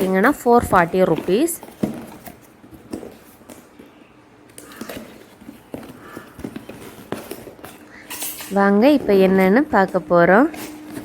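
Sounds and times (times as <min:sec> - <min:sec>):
gift box being opened by hand: 0:00.7 - 0:08.2.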